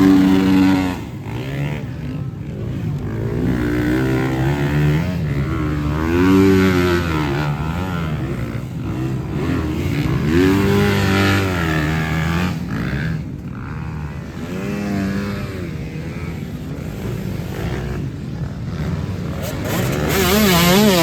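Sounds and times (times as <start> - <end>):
motorcycle engines revving: 0.0 - 21.0
rough engine noise: 0.0 - 21.0.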